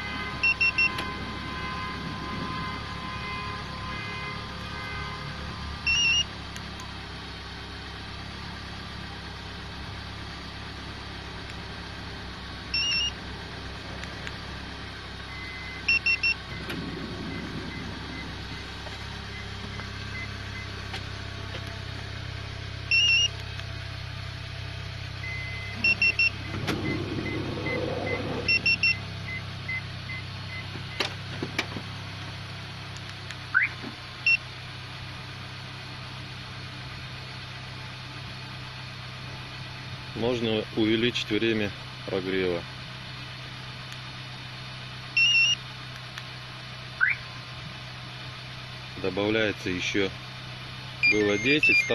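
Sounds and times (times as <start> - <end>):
car alarm fob high beeps: 0.0 - 5.2, 5.8 - 6.4, 12.7 - 13.2, 15.2 - 20.8, 22.8 - 23.4, 25.2 - 31.1, 33.5 - 34.5, 45.1 - 45.7, 47.0 - 47.3, 51.0 - 51.9
car engine idling: 0.0 - 51.9.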